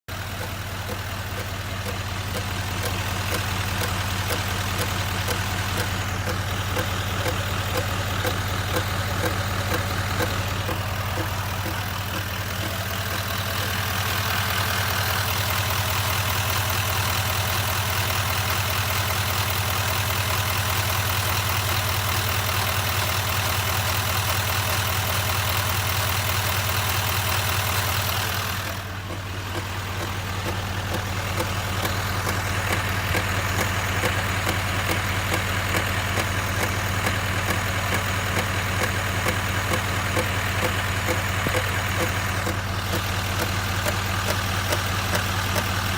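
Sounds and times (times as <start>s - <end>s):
diesel truck engine idling: 0.1s - 45.9s
rapid clicking tapping: 0.4s - 13.8s, 29.1s - 45.7s.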